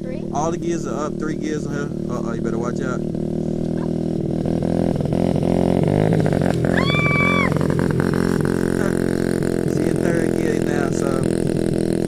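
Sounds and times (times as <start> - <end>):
dirt bike engine under throttle: 0.0 - 12.0
high-pitched cry: 6.8 - 7.5.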